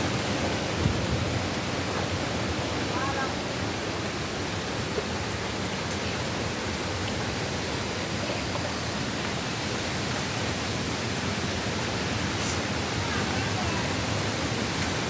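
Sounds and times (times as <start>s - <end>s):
wind buffeting microphone: 0.0s - 2.6s
light rain: 0.0s - 15.0s
rushing wind: 0.0s - 15.0s.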